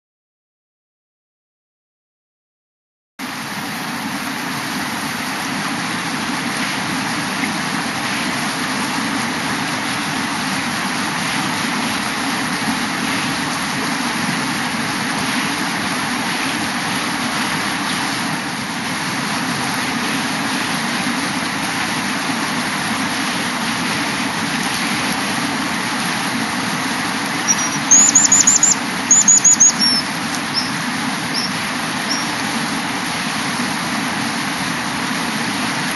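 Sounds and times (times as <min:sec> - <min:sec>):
river water rushing around rocks: 0:03.3 - 0:35.9
baby bird chirping: 0:27.4 - 0:32.4.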